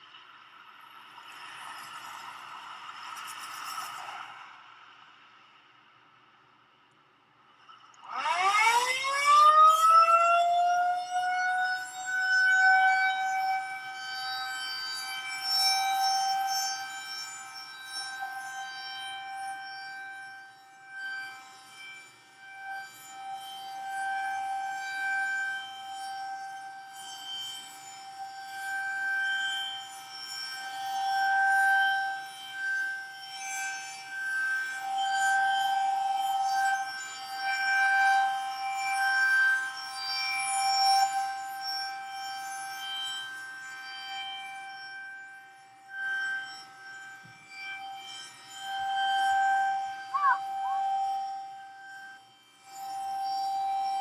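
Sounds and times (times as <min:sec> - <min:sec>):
rotating tornado siren: 0:08.1 - 0:12.9, 0:50.1 - 0:51.1
short siren chirps: 0:50.0 - 0:51.0.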